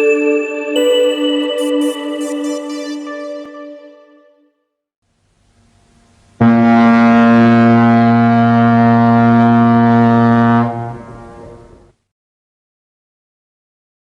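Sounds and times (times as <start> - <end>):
ship's horn blast: 6.4 - 11.2.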